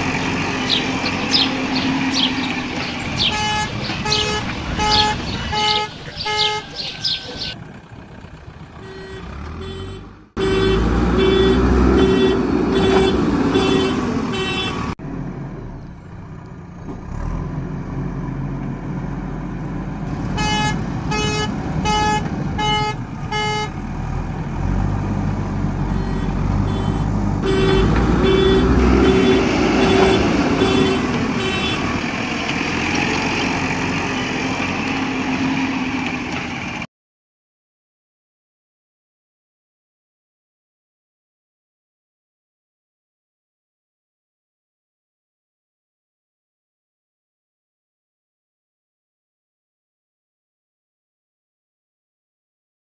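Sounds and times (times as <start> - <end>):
engine rumble: 0.0 - 36.9
truck horn short toots: 3.2 - 7.2, 8.8 - 14.9, 20.3 - 23.8, 25.8 - 32.0.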